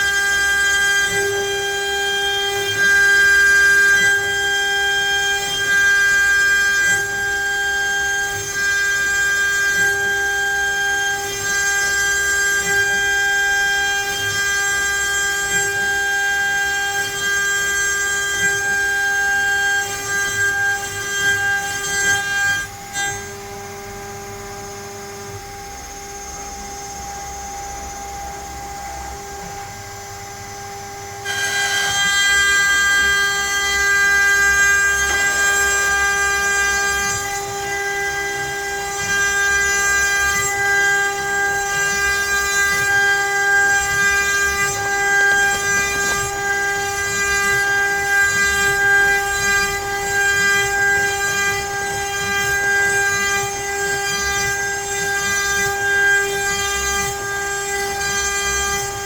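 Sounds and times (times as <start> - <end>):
router bit cutting wood: 0.0 - 59.0
router spindle whining: 0.0 - 59.0.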